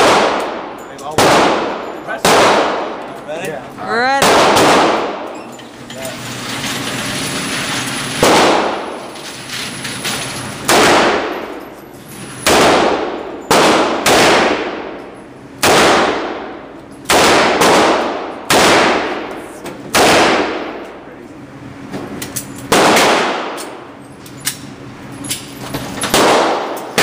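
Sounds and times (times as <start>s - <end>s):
handgun shots echoing: 0.0s - 3.0s, 4.2s - 5.3s, 10.7s - 11.5s, 12.4s - 14.8s, 17.1s - 19.3s, 19.9s - 20.7s, 22.7s - 23.8s, 26.0s - 27.0s.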